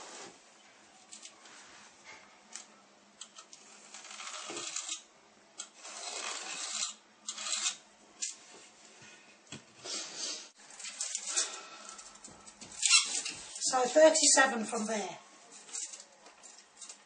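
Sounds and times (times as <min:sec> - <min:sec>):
pencil scratching on wall: 0:05.6 - 0:07.8.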